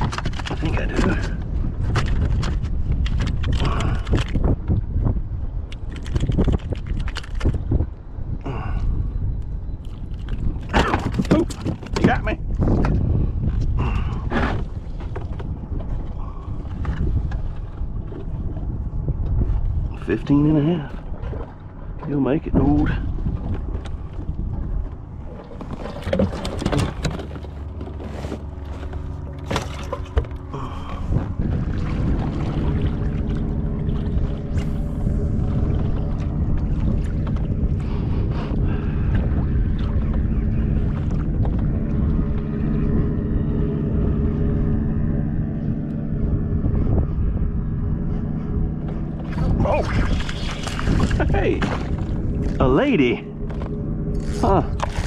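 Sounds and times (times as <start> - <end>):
knocks and clatter on kayak: 0.0 - 5.1, 10.6 - 18.6, 21.1 - 32.7, 50.6 - 52.6
engine droning steadily: 0.0 - 55.0
steady low rumble: 0.0 - 55.0.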